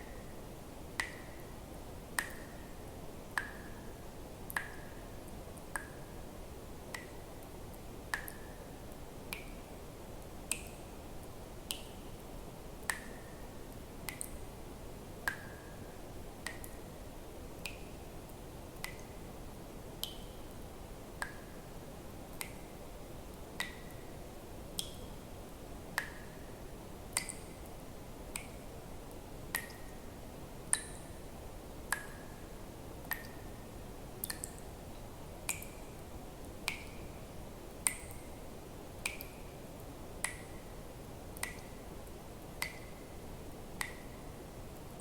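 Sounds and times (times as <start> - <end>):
faint steady hiss: 0.0 - 45.0
water drops plinking into water: 1.0 - 1.4, 2.2 - 2.7, 3.4 - 3.8, 4.5 - 5.0, 5.7 - 6.2, 8.1 - 8.6, 12.8 - 13.4, 14.1 - 14.4, 18.8 - 19.2, 23.6 - 24.0, 24.8 - 25.1, 27.1 - 27.6, 29.5 - 30.0, 30.7 - 31.2, 31.9 - 32.4, 33.0 - 33.4, 34.2 - 34.7, 35.4 - 36.0, 36.6 - 37.0, 37.8 - 38.3, 39.0 - 39.4, 40.2 - 40.6, 41.4 - 41.8, 42.6 - 43.0, 43.8 - 44.2.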